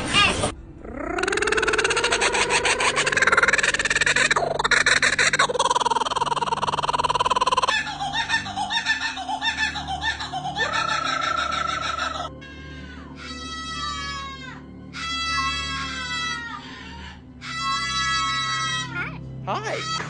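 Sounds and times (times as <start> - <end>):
rhythmic bird call: 1.2 - 12.3.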